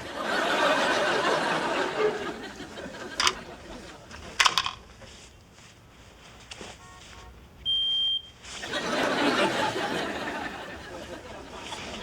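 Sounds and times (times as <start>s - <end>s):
smoke detector beep: 6.8s - 8.4s.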